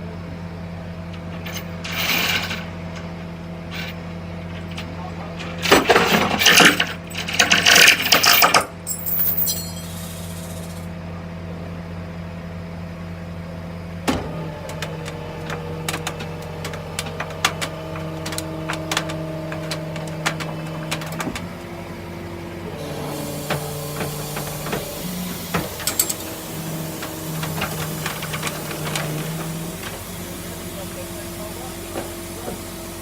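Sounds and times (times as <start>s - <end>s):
vehicle engine running: 9.1s - 33.0s.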